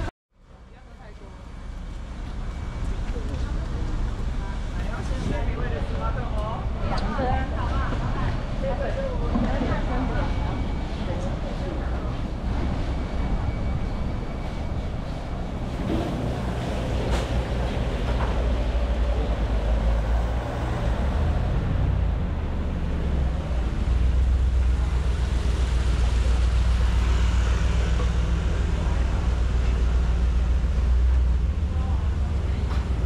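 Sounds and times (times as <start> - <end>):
low outdoor rumble: 0.0 - 33.0.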